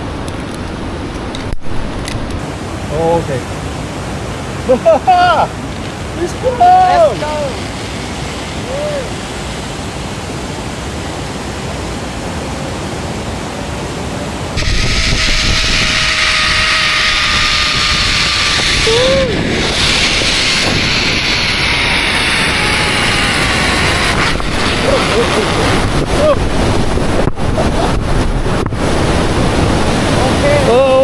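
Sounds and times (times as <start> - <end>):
rush of falling water: 0.0 - 31.0
rush of wind: 0.0 - 31.0
zip-line trolley wheels whining: 5.6 - 11.8, 14.6 - 26.6.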